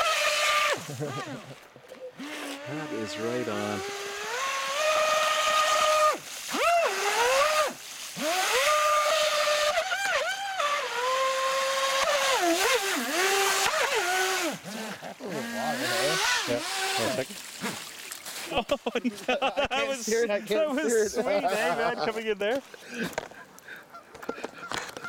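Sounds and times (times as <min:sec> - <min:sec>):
electric motor whine: 0:02.2 - 0:17.2.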